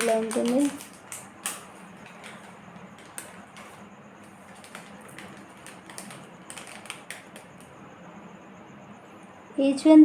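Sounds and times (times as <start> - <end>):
small metal pieces clicking: 0.0 - 3.8.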